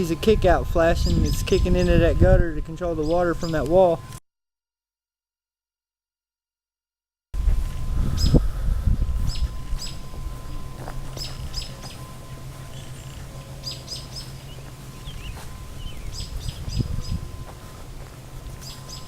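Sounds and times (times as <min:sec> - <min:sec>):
small birds chirping: 0:11.1 - 0:17.4, 0:18.6 - 0:19.0.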